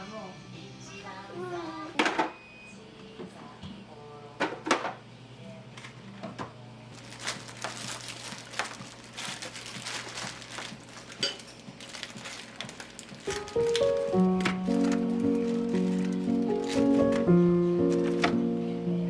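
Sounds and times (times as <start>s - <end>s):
household items clinking: 6.9s - 18.6s.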